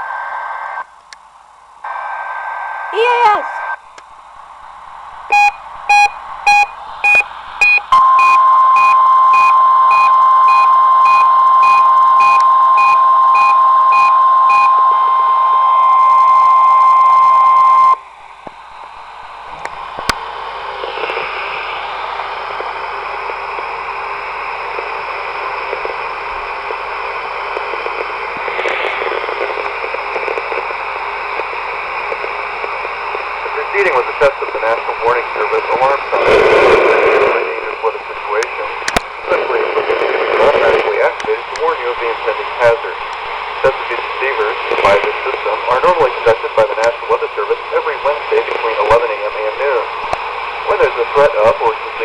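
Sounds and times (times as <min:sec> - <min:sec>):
radio hiss: 0:00.0 - 0:01.0, 0:01.8 - 0:52.0
steady alarm tone: 0:05.2 - 0:18.0
short beeps: 0:05.3 - 0:15.0.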